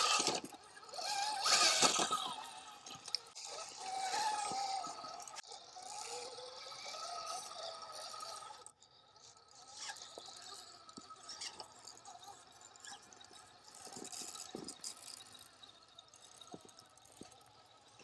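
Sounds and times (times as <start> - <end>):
tyres scraping on rock: 0.0 - 5.4
electric motor whining: 0.0 - 8.7
faint clicks and rattles: 10.0 - 18.0.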